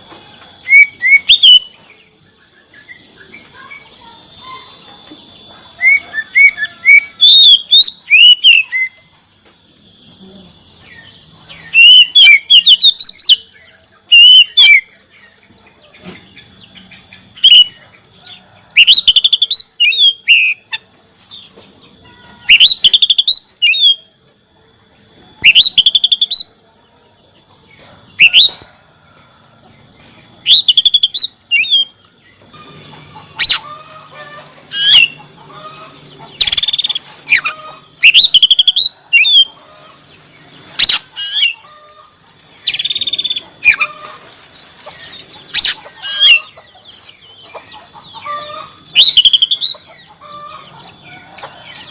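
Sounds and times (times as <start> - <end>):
faint low hum: 0.0 - 51.9
magpie-robin singing: 0.6 - 4.9, 5.7 - 9.1, 10.6 - 15.4, 16.3 - 17.8, 18.8 - 21.5, 22.4 - 24.1, 25.4 - 26.6, 28.1 - 28.6, 30.4 - 32.4, 33.1 - 39.6, 40.6 - 41.6, 42.6 - 44.0, 44.9 - 51.9.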